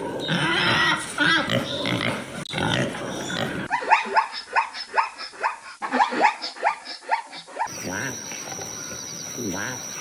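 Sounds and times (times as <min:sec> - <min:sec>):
dog yipping: 0:03.7 - 0:07.7.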